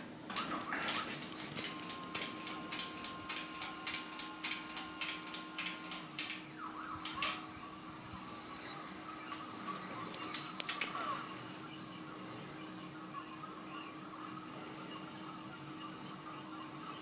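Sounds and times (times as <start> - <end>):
printer clicks: 0.3 - 7.4, 10.2 - 11.0
stepper motors whining and ticking: 0.4 - 11.6.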